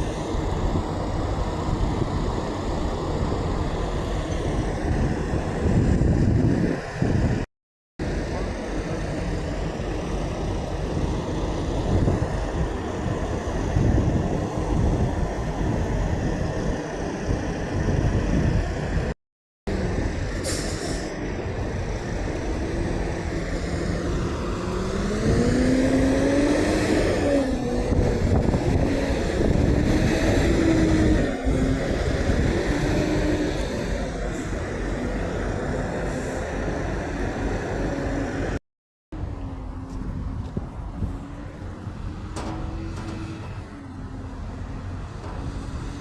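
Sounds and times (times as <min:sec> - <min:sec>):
truck traffic rumble: 0:00.0 - 0:07.4, 0:08.0 - 0:46.0
truck engine accelerating: 0:19.7 - 0:38.6.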